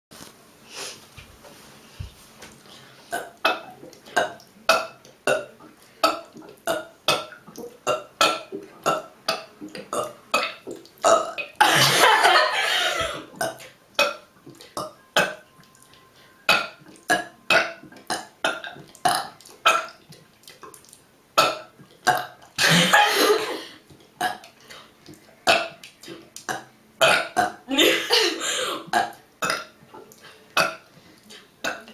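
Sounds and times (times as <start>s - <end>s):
girl burping: 27.0s - 29.6s.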